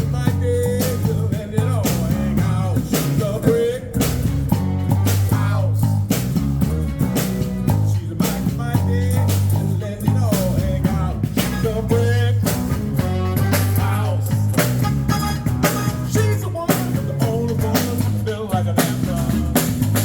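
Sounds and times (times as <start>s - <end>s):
bass line: 0.0s - 20.0s
drum hits: 0.0s - 20.0s
electric guitar lines: 10.9s - 20.0s.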